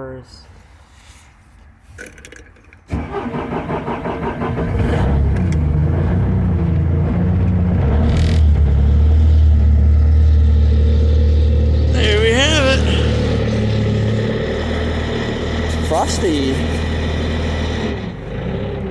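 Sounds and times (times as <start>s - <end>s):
starter motor cranking: 2.9s - 4.9s
diesel engine idling: 9.4s - 18.9s.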